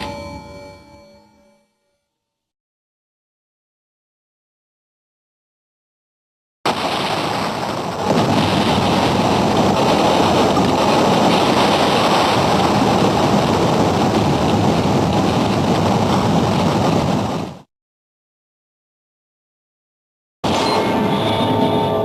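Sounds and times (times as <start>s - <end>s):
steady rushing noise: 6.7s - 17.7s.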